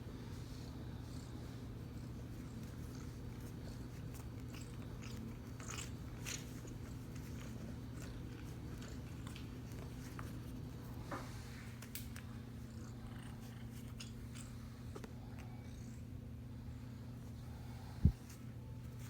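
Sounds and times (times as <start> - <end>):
cat purring: 0.5 - 10.4, 12.3 - 16.1.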